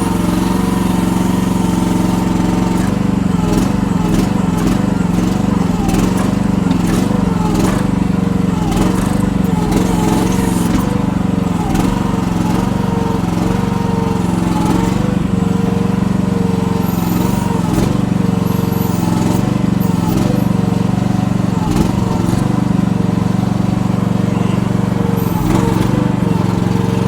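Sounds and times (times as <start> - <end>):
excavator engine under load: 0.0 - 27.0.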